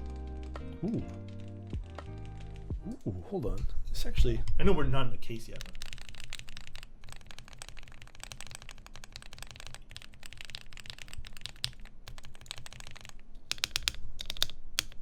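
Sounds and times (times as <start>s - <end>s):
mechanical keyboard typing: 0.0s - 2.9s, 5.5s - 15.0s
loud key presses: 5.6s - 15.0s.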